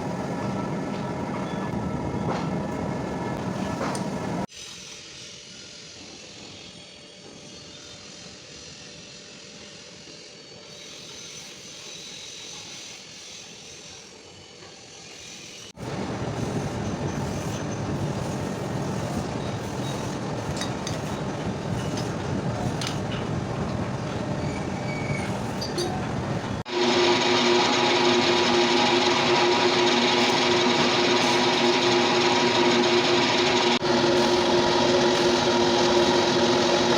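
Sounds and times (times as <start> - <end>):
metalworking machinery running: 15.8 - 36.9.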